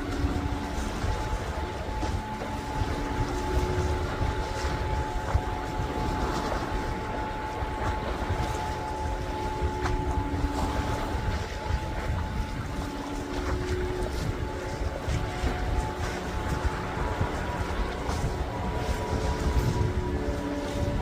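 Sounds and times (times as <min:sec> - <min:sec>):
distant boat engine rumble: 0:00.0 - 0:21.0
wind noise on microphone: 0:00.0 - 0:21.0.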